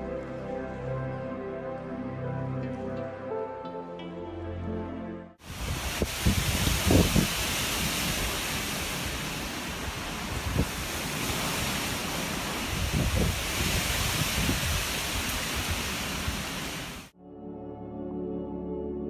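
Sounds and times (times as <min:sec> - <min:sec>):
wind gusts buffeting microphone: 0:05.4 - 0:17.1.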